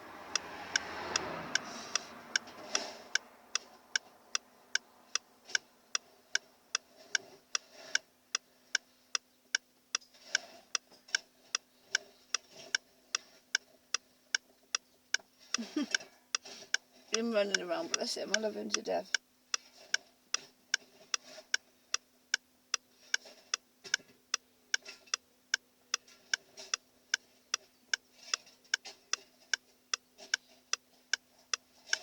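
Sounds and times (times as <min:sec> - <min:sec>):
car indicator relay clicking: 0:00.3 - 0:06.0, 0:16.3 - 0:19.2.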